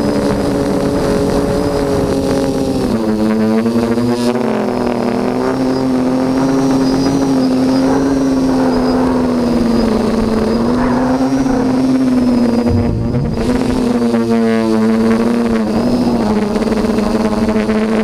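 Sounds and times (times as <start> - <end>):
quadcopter motors whining: 0.0 - 12.9.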